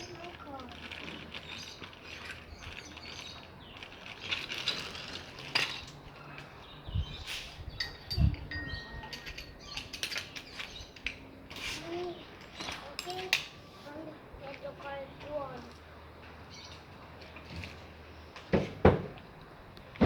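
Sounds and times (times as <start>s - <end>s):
metal tools clinking and knocking: 7.8s - 11.3s, 12.4s - 13.6s.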